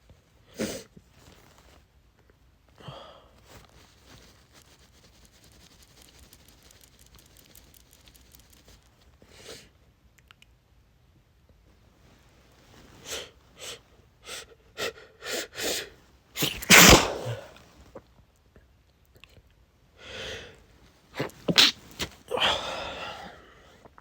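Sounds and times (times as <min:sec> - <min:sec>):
man sneezing: 0:16.4 - 0:17.6, 0:21.2 - 0:23.3.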